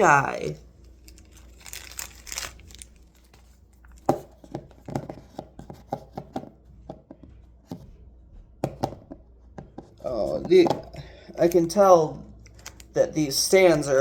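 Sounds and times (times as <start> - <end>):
plastic wrapper crinkling: 0.0 - 4.1.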